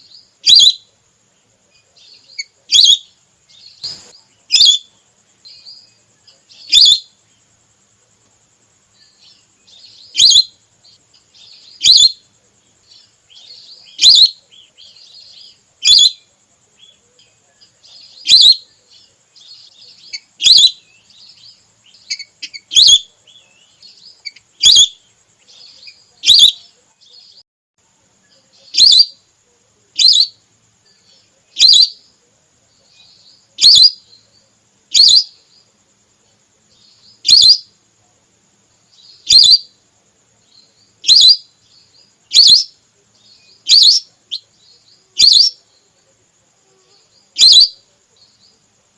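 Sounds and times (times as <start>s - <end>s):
faint steady high hiss: 0.0s - 48.9s
soft twittering: 0.0s - 48.9s
loud high duck whistle: 47.4s - 47.7s.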